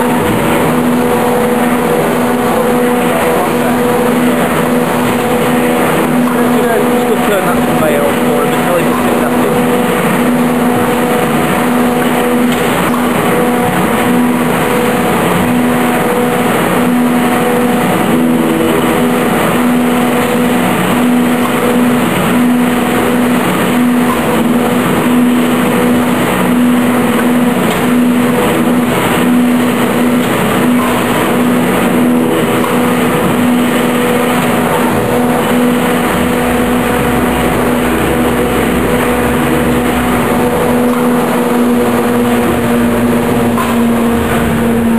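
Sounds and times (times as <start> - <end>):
flickering low tone: 0.0 - 44.9
mechanical noise: 0.0 - 44.9
steady machine hum: 0.0 - 44.9.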